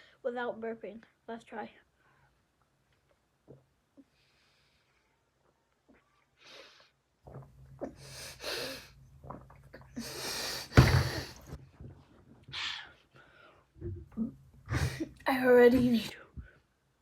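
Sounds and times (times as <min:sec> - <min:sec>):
person gulping water: 0:07.3 - 0:11.9, 0:13.8 - 0:15.2
snorting breaths through nose: 0:10.0 - 0:11.6
loud thump: 0:10.7 - 0:11.5.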